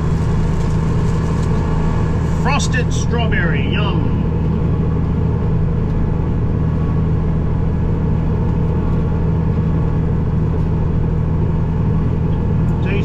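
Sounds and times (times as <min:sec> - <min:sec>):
tractor engine running: 0:00.0 - 0:13.0.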